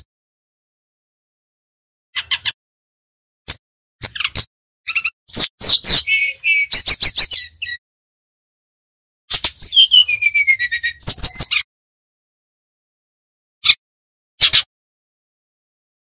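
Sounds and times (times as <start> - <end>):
bird singing chirps and whistles: 3.5 - 7.8, 9.3 - 11.7.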